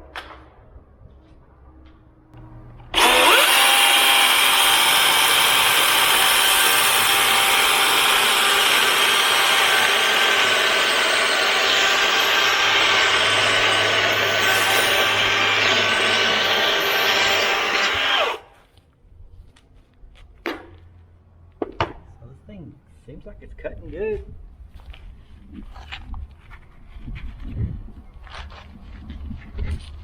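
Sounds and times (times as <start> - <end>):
chainsaw cutting through log: 2.4 - 18.5.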